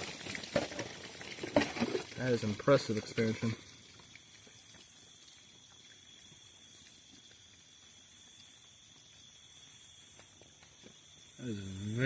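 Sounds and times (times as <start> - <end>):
insect chorus buzzing: 0.0 - 12.0.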